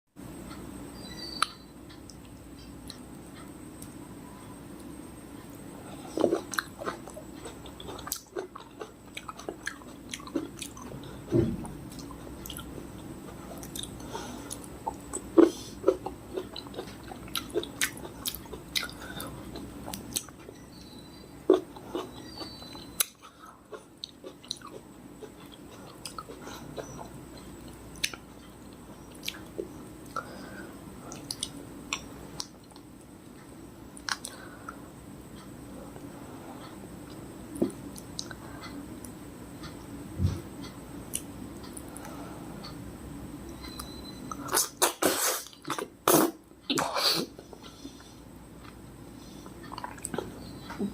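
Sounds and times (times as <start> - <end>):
chewing and biting fruit: 6.1 - 20.9.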